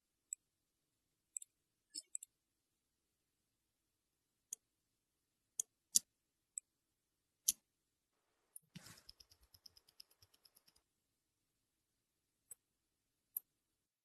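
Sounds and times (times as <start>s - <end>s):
small metallic clicks: 8.8s - 10.8s.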